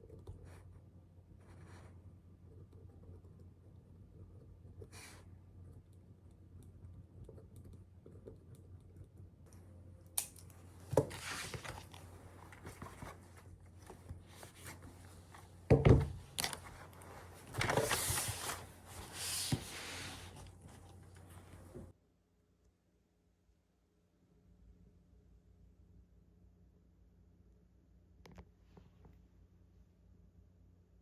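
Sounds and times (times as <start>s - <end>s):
rustling: 10.7s - 21.9s.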